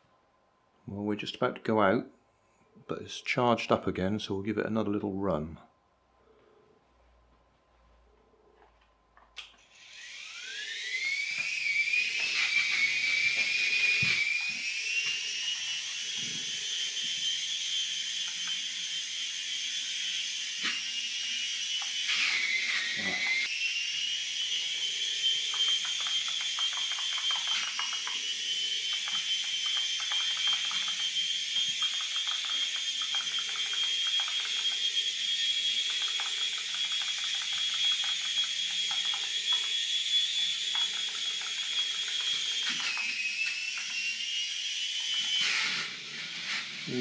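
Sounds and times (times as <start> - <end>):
toy motor high-pitched whine: 9.4 - 47.0
toy clicks and rattles: 18.2 - 18.7, 21.8 - 22.8, 25.4 - 44.0.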